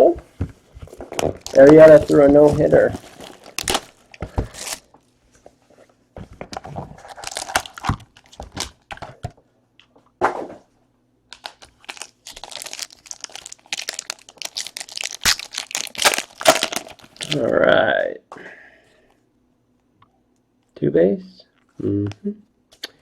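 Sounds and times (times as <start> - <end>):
plastic wrapping crinkling and tearing: 0.8 - 4.9, 6.8 - 9.0, 11.3 - 17.6.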